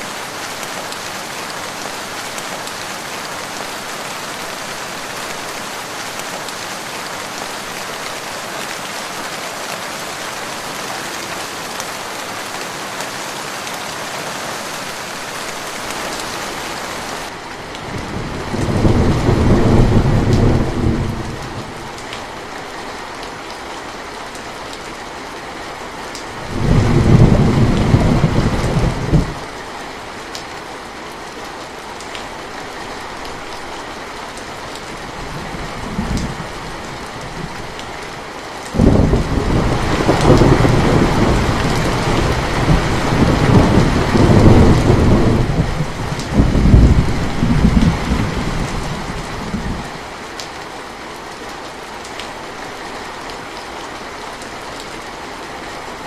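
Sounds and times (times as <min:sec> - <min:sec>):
steady rain falling: 0:00.0 - 0:56.0
low rolls of thunder: 0:18.0 - 0:21.7, 0:26.4 - 0:29.4, 0:38.8 - 0:49.9.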